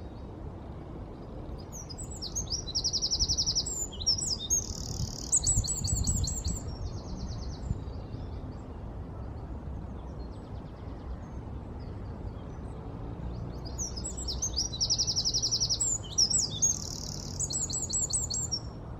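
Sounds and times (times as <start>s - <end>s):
wren singing trills: 1.6s - 8.6s, 13.4s - 18.8s.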